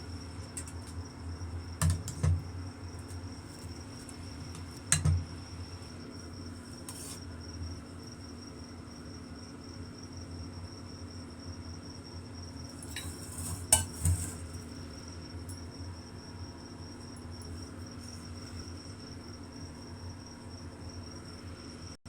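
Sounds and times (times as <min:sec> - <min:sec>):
utensil knocking on pot: 0:04.9 - 0:05.2.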